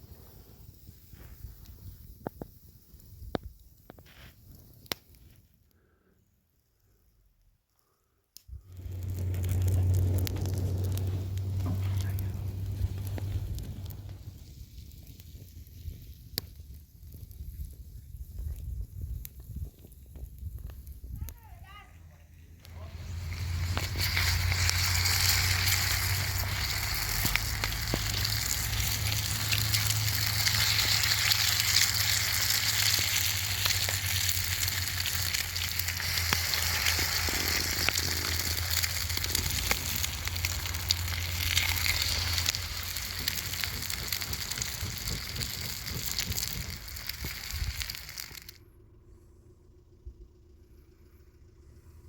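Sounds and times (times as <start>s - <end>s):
wood fire crackling: 0.0s - 48.6s
low hum: 8.5s - 16.4s, 22.1s - 52.0s.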